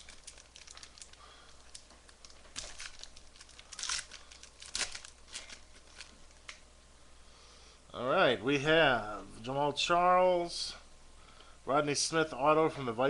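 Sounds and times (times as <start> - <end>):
foil wrapper tearing and crinkling: 0.0 - 6.6.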